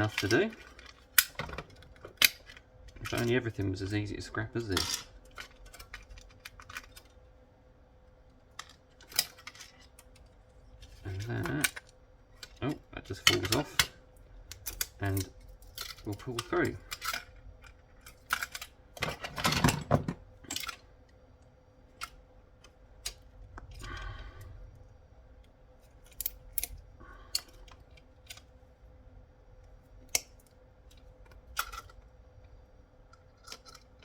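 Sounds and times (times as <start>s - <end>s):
plastic parts clicking and knocking: 0.0s - 3.5s, 4.6s - 7.2s, 8.4s - 21.2s, 30.0s - 34.0s.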